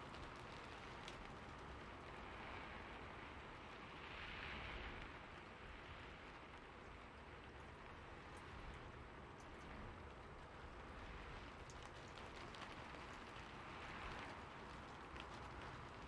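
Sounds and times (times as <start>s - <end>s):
soft rain falling: 0.0s - 16.0s.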